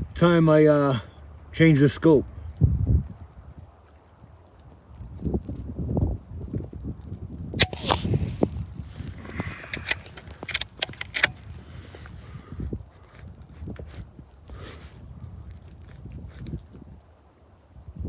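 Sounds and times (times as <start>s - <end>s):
air rifle clicks and knocks: 7.6s - 11.6s.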